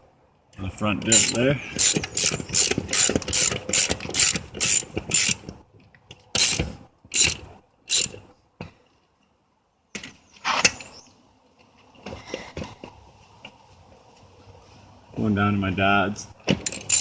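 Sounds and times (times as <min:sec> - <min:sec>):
ratchet wrench clicking: 0:01.1 - 0:05.4, 0:06.4 - 0:08.2, 0:16.7 - 0:17.0.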